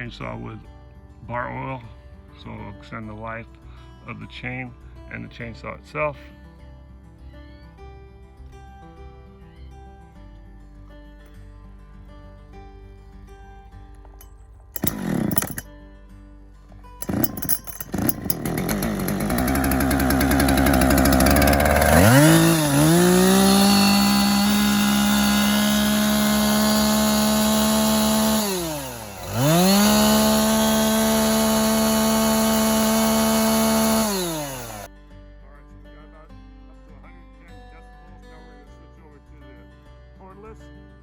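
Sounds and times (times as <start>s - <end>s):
electric chainsaw whine: 14.8s - 15.6s, 17.0s - 34.9s.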